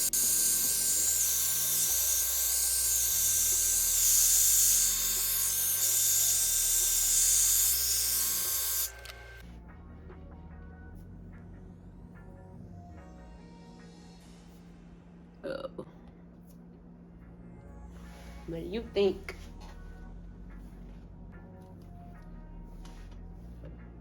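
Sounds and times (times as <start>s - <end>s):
hot air dryer brush running: 0.0s - 9.4s
background music: 0.0s - 24.0s.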